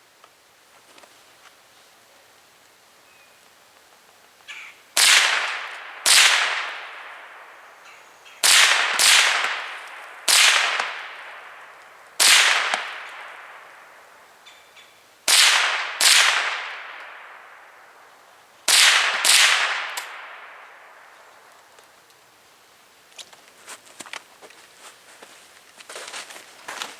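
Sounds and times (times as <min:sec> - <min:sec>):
rifle shots echoing: 0:05.0 - 0:14.2, 0:15.3 - 0:18.1, 0:18.7 - 0:21.5.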